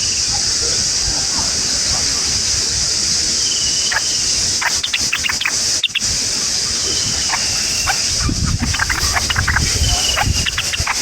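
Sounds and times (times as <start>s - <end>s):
birds chirping: 0.0s - 11.0s
high-pitched insect drone: 0.0s - 11.0s
bird trill: 3.2s - 11.0s.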